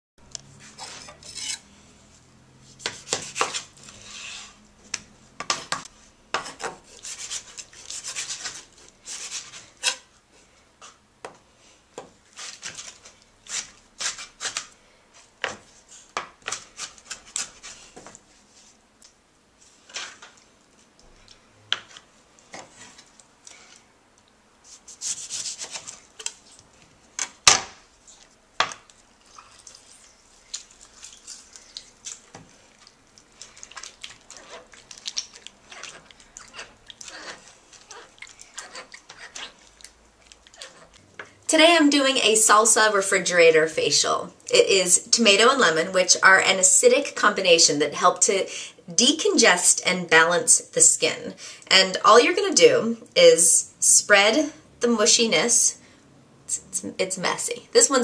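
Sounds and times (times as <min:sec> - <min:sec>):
utensil scraping against a dish: 0:00.6 - 0:01.7, 0:06.4 - 0:10.1, 0:33.5 - 0:39.9.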